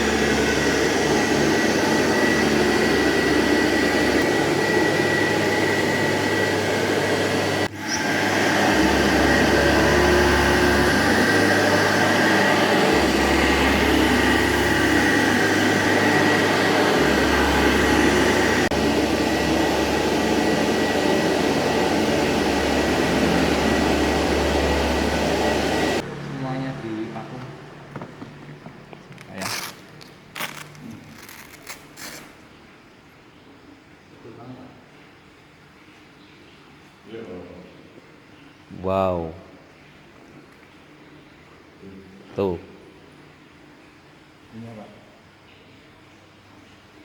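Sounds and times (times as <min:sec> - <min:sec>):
vacuum cleaner on carpet: 0:00.0 - 0:28.1.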